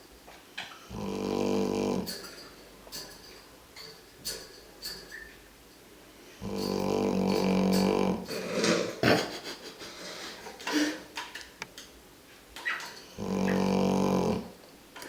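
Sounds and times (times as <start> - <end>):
dog snoring: 0.9 - 2.3, 6.4 - 9.2, 13.2 - 14.6.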